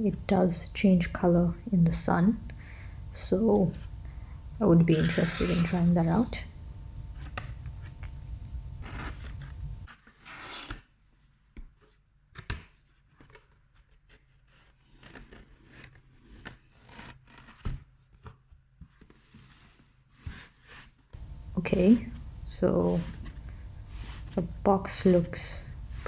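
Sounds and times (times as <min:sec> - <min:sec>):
low hum: 0:00.0 - 0:09.9, 0:21.2 - 0:26.0.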